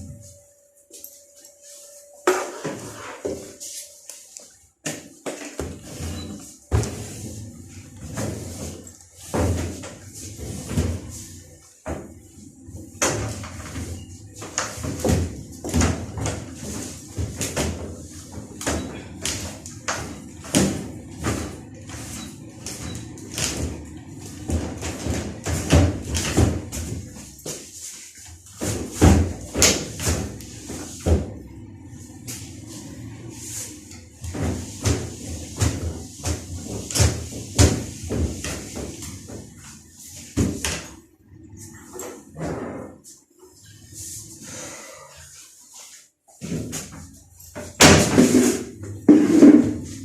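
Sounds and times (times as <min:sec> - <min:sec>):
knocks and thumps of parts: 0:07.9 - 0:27.8, 0:28.4 - 0:31.5, 0:33.9 - 0:41.1, 0:46.4 - 0:50.0.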